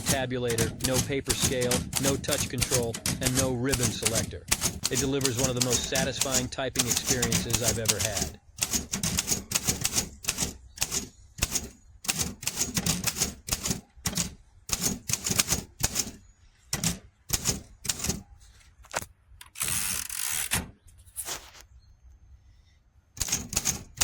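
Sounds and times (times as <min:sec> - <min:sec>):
manual typewriter key strikes: 0:00.0 - 0:18.2, 0:23.2 - 0:24.0.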